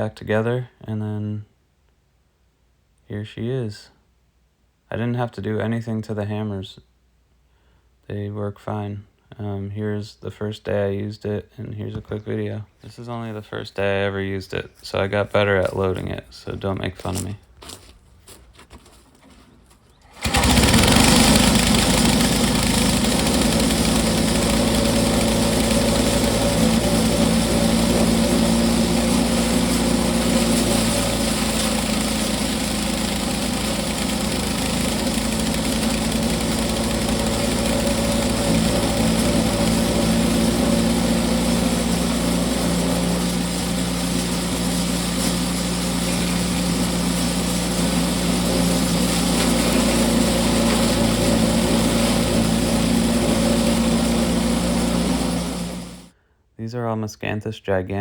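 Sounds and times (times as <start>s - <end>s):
stalks shredded by hammers: 20.0s - 56.0s
wood chipper engine running: 20.0s - 56.1s.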